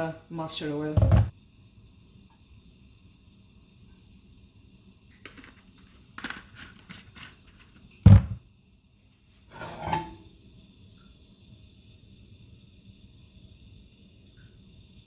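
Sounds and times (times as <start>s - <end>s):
pan set down with heavy knock: 1.0s - 1.3s, 8.1s - 8.4s.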